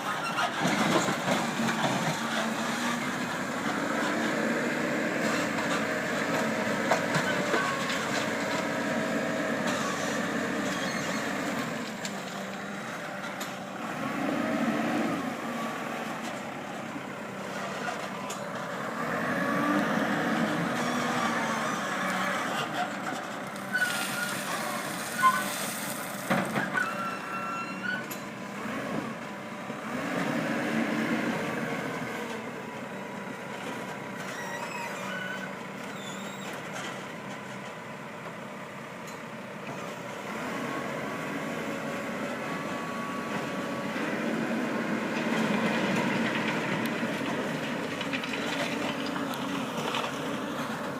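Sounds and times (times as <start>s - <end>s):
backhoe diesel engine working: 0.0s - 50.9s
short squeaks: 9.7s - 11.5s, 23.6s - 25.6s, 26.5s - 28.2s, 34.2s - 36.6s.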